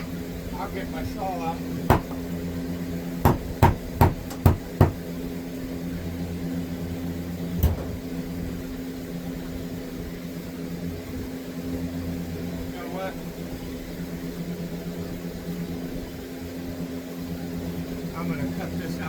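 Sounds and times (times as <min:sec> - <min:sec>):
steady low hum: 0:00.0 - 0:19.0
sharp knocks: 0:01.9 - 0:02.2, 0:03.3 - 0:05.0.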